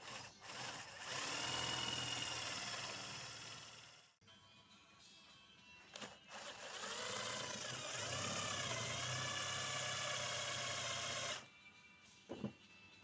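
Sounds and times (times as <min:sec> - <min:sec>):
electric drill motor whine: 0:00.0 - 0:04.1, 0:06.0 - 0:11.4.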